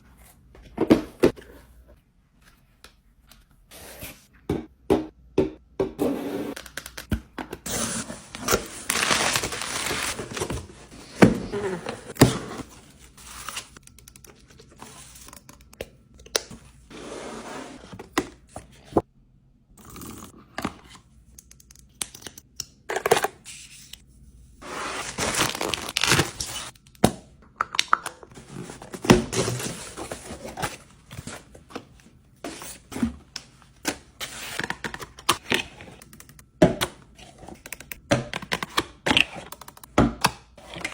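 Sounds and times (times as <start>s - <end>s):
packaging crinkling: 25.0s - 26.7s
packaging ripping: 25.0s - 26.7s.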